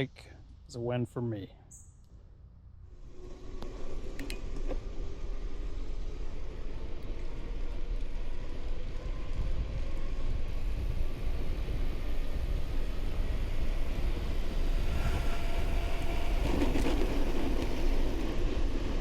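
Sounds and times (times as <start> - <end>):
bike tyres rolling: 5.6 - 19.0
wind rushing: 9.4 - 19.0.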